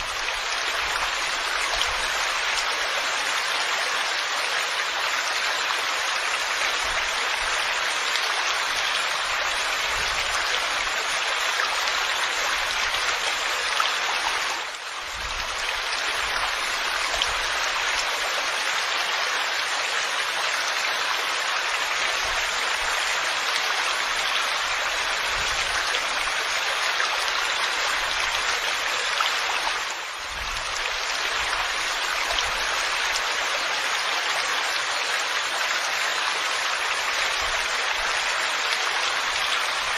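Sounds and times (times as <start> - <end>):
rain falling steadily: 0.0 - 39.9.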